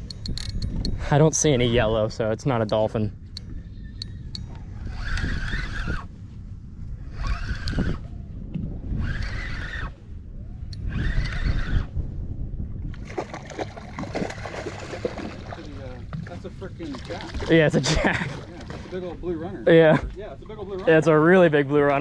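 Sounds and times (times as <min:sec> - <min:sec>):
wind: 0:00.0 - 0:22.0
fishing reel cranking with gear whine: 0:03.4 - 0:06.1, 0:07.1 - 0:08.1, 0:08.9 - 0:10.0, 0:10.6 - 0:11.9
water noise: 0:06.8 - 0:22.0.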